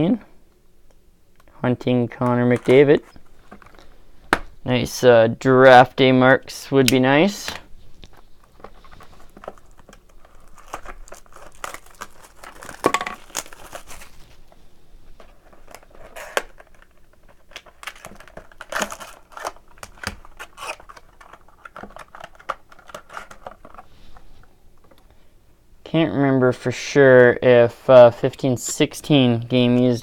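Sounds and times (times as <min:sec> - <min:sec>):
packaging crinkling and tearing: 0:07.5 - 0:14.6, 0:15.2 - 0:24.2.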